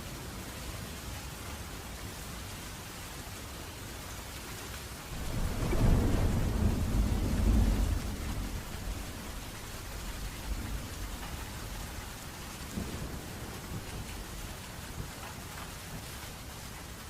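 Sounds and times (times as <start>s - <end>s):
steady rain: 0.0s - 17.0s
thunder rumbling: 5.1s - 17.0s.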